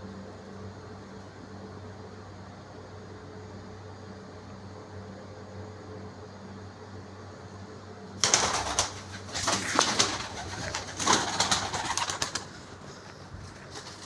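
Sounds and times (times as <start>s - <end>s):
bird fluttering and scuffling: 8.2s - 14.0s.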